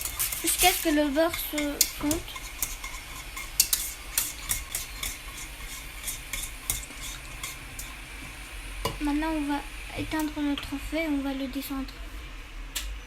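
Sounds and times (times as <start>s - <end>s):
utensil scraping a saucepan: 0.0s - 9.0s.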